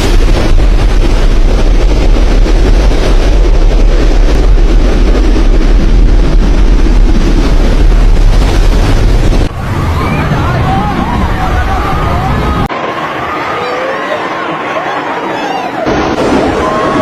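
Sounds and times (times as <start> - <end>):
wind buffeting microphone: 0.0 - 12.7.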